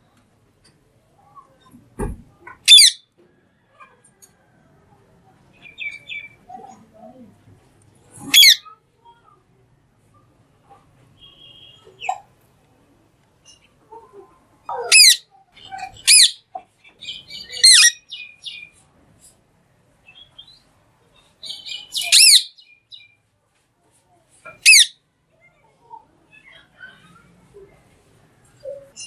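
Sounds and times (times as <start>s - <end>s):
parrot chattering: 2.6s - 3.0s, 8.3s - 8.7s, 14.7s - 16.4s, 17.2s - 18.0s, 21.4s - 22.5s, 24.5s - 25.0s
parrot screeching: 2.7s - 3.0s, 8.3s - 8.6s, 14.7s - 15.2s, 15.9s - 16.4s, 17.6s - 18.0s, 22.0s - 22.5s, 24.6s - 25.0s.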